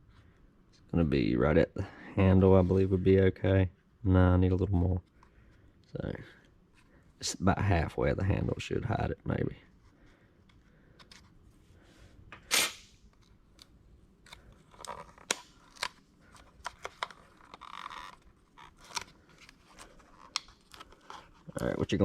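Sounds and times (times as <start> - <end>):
vinyl film clicks and rustles: 13.2 - 21.6.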